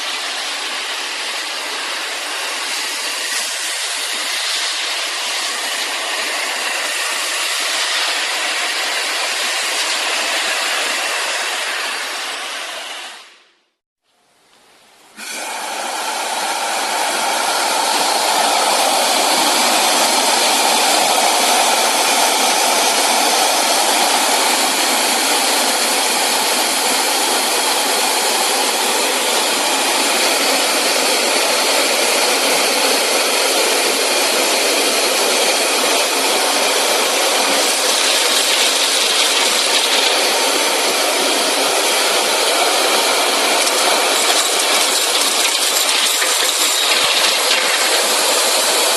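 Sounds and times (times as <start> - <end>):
vacuum cleaner running: 0.0 - 13.6, 15.2 - 48.9.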